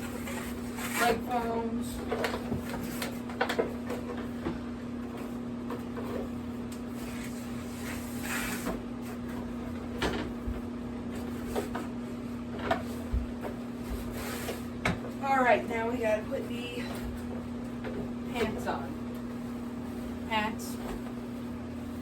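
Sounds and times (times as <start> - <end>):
foam rustling and scraping: 0.0 - 1.7, 13.8 - 14.8
room fan humming: 0.0 - 22.0.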